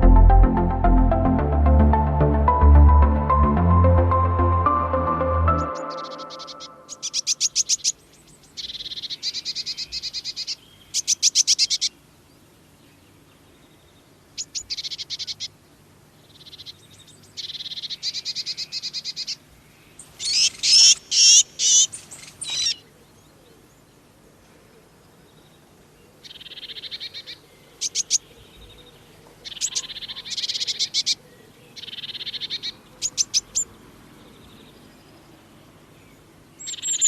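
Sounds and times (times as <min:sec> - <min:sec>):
small birds calling high thin notes: 0:04.7 - 0:12.0, 0:16.2 - 0:22.8, 0:29.4 - 0:35.5, 0:36.1 - 0:37.0.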